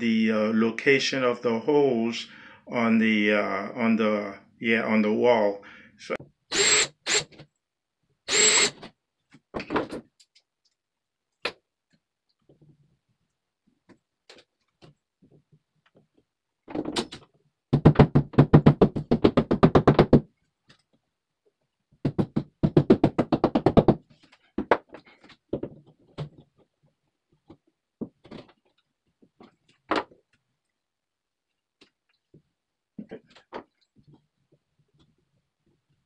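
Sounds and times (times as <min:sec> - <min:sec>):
power drill drilling into wall: 0:06.5 - 0:07.3, 0:08.3 - 0:08.8.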